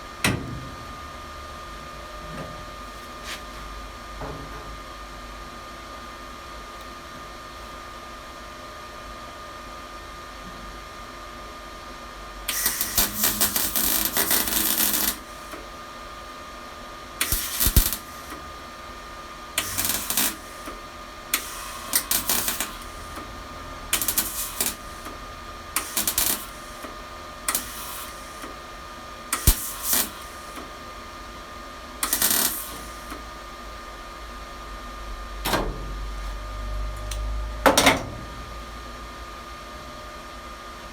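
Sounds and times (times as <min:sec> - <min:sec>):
crackling weld bursts: 0:12.5 - 0:15.7, 0:17.2 - 0:18.5, 0:19.6 - 0:31.3, 0:32.0 - 0:33.4.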